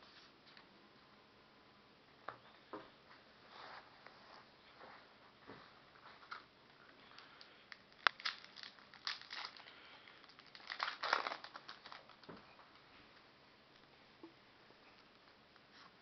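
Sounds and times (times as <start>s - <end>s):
foil wrapper crinkling and tearing: 7.0s - 12.5s.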